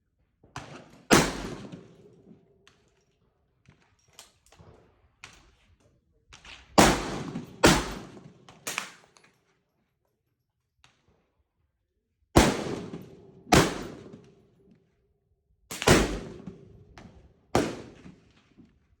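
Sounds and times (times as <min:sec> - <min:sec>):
rifle shots echoing: 0:00.6 - 0:02.1, 0:06.8 - 0:09.0, 0:12.4 - 0:14.4, 0:15.7 - 0:18.3.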